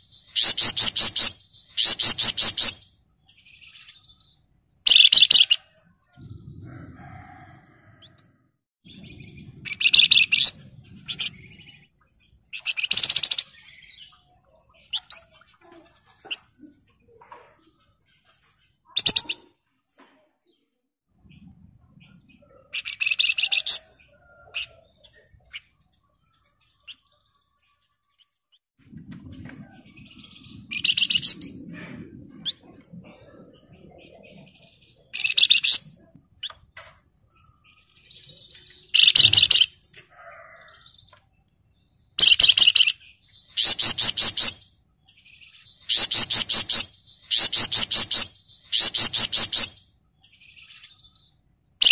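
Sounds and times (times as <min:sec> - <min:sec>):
low rumbling noise: 0:08.9 - 0:12.5, 0:28.8 - 0:35.2
soft bird chirps: 0:08.9 - 0:51.9
songbird rattling trills: 0:37.8 - 0:40.0.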